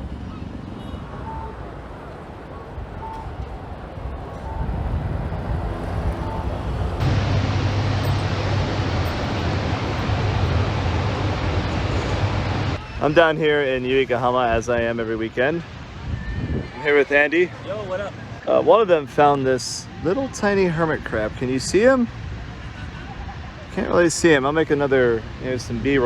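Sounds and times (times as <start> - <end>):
steady rushing noise: 0.0 - 26.0
street traffic: 0.0 - 26.0
low hum: 3.2 - 12.8.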